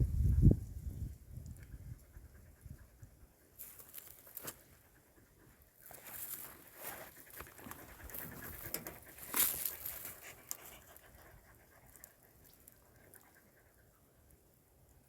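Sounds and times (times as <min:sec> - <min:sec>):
dogs scuffling and clicking: 0:05.9 - 0:11.0.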